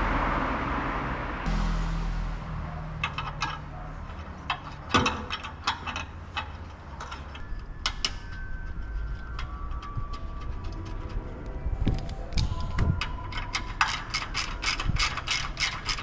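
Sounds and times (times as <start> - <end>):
low steady hum: 1.4 - 13.6
hand tools clinking: 3.0 - 11.0.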